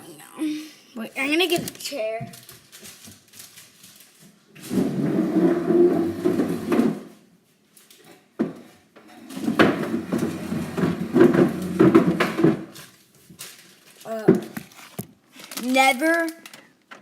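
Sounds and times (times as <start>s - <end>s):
chair scraping across floor: 4.0s - 7.3s, 7.9s - 13.0s.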